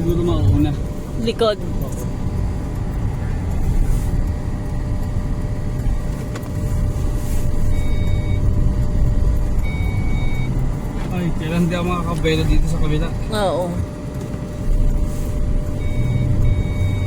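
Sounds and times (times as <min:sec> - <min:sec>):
car engine low rumble: 0:00.0 - 0:17.0
short electronic beep: 0:07.7 - 0:08.4, 0:15.8 - 0:17.0.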